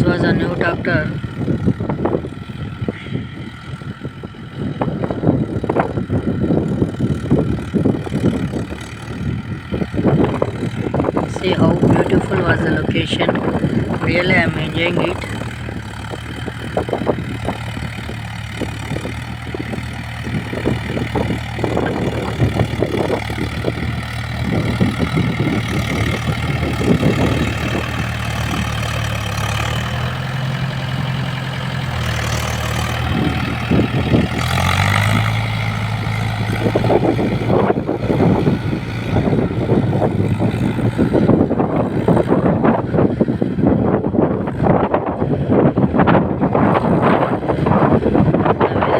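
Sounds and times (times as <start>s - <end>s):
tractor diesel engine running: 0.0s - 48.9s.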